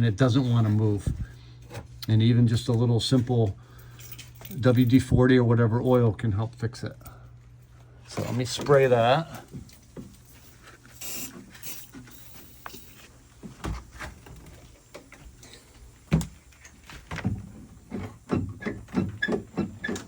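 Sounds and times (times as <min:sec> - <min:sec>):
aerosol spray hiss: 0:11.0 - 0:13.0.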